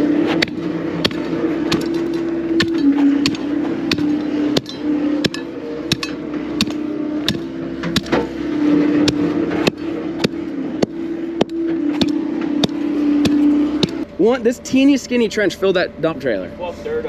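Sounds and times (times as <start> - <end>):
engine idling hum: 0.0 - 17.0
sharp knocks: 0.3 - 8.4, 9.0 - 14.0.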